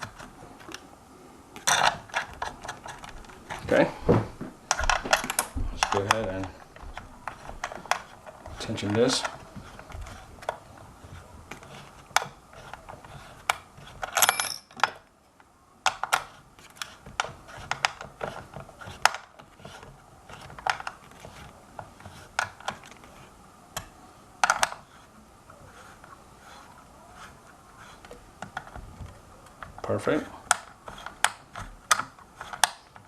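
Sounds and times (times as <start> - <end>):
hand tool clinking on metal: 14.2 - 14.8.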